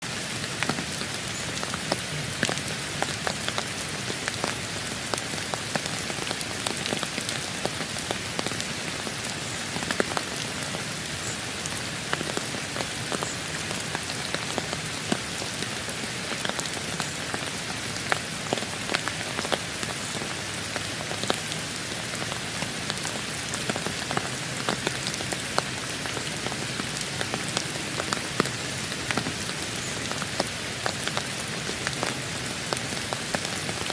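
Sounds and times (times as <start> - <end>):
rain falling: 0.0 - 33.9
raindrops clicking on hard surface: 9.5 - 33.9.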